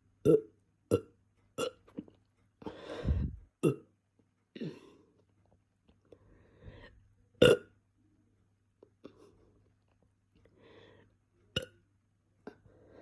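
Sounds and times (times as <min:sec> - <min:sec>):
person burping: 0:00.2 - 0:01.8, 0:03.6 - 0:03.9, 0:07.4 - 0:07.7.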